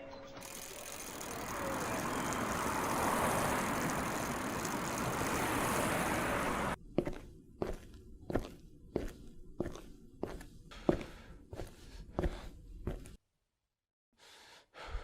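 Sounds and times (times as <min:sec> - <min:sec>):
road vehicle running: 0:00.4 - 0:08.5.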